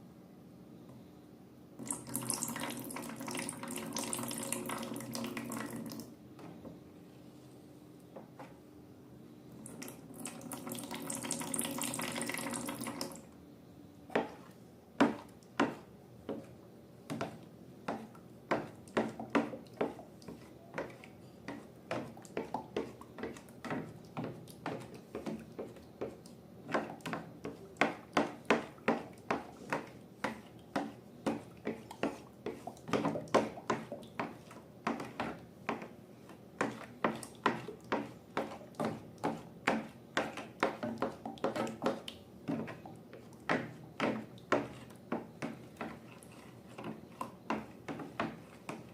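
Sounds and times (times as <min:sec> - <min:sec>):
liquid pouring: 0:01.8 - 0:06.1.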